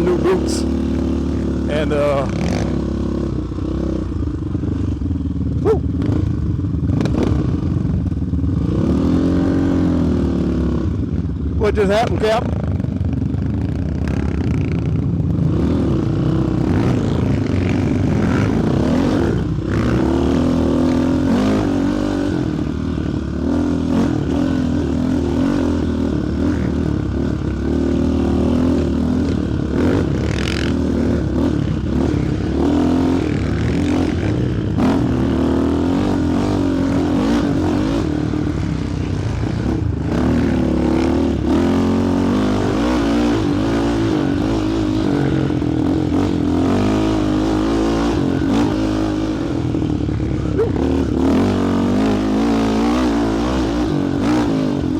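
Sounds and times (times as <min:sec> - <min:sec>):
quad engine revving: 0:00.0 - 0:04.0, 0:15.4 - 0:54.9.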